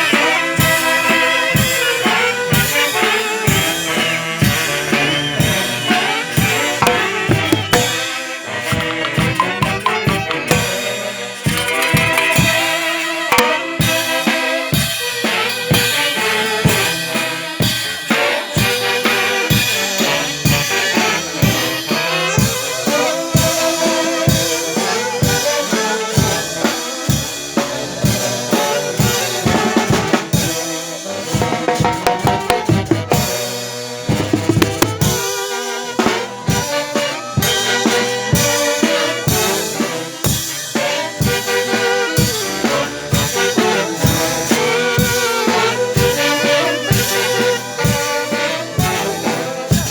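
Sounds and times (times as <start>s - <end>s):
band music: 0.0s - 49.9s
drum kit beat: 0.0s - 49.9s.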